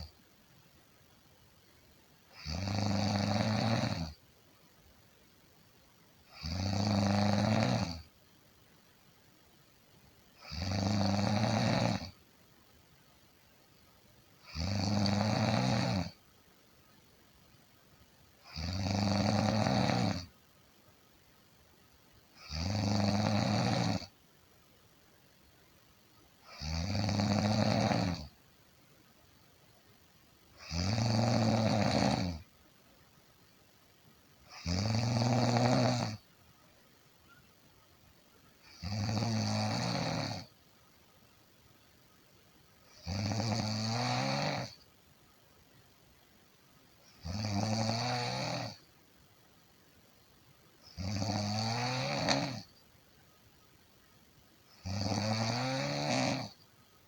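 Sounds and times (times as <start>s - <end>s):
person snoring: 2.3s - 4.2s, 6.3s - 8.0s, 10.4s - 12.2s, 14.4s - 16.2s, 18.4s - 20.3s, 22.4s - 24.1s, 26.5s - 28.3s, 30.6s - 32.4s, 34.5s - 36.2s, 38.7s - 40.5s, 42.9s - 44.8s, 47.2s - 48.8s, 51.0s - 52.7s, 54.8s - 56.6s.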